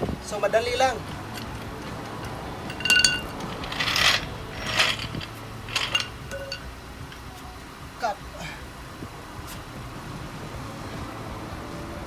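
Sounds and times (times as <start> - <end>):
low steady hum: 0.0 - 12.0
metal objects rattling and scraping: 1.0 - 7.4
metallic clink: 1.0 - 7.6.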